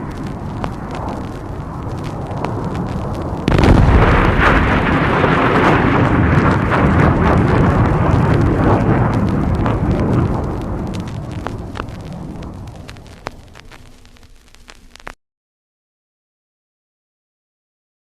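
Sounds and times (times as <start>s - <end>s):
loud explosion with rumbling roar: 0.0s - 13.8s
low rumble: 0.0s - 14.3s.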